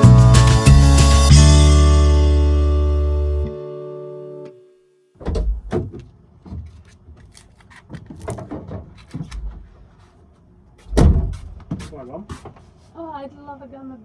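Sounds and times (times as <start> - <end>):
heavy thump: 5.2 - 6.0, 10.8 - 11.9
objects knocking and clicking: 5.2 - 9.8.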